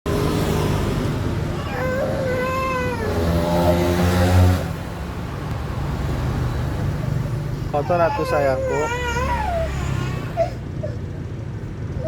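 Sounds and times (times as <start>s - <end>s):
child wailing: 1.6s - 3.8s, 7.8s - 10.6s.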